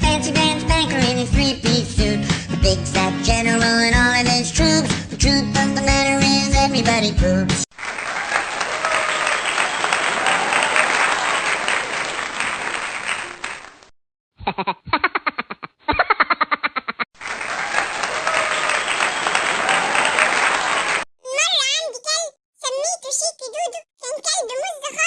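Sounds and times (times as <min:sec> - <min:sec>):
crowd applause: 0:07.7 - 0:13.9, 0:17.2 - 0:21.1.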